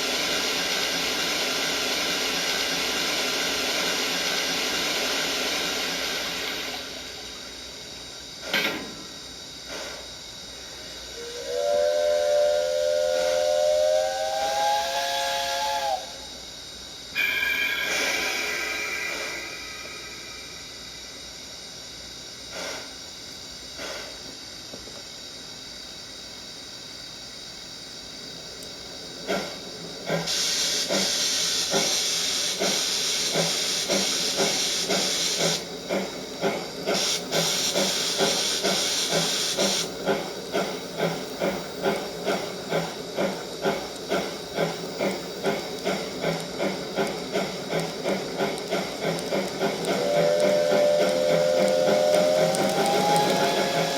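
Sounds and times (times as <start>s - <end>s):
steam hiss: 0.0s - 7.6s, 9.6s - 16.3s, 17.2s - 21.1s, 22.5s - 23.0s, 23.7s - 24.4s, 28.8s - 53.9s
steam locomotive exhaust chuffs: 0.0s - 16.4s, 17.1s - 25.0s, 28.0s - 53.9s.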